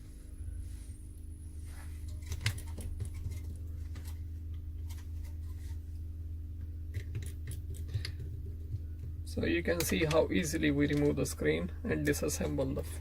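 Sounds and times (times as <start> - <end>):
steady low hum: 0.0 - 13.0
light clicks and taps: 6.9 - 11.4.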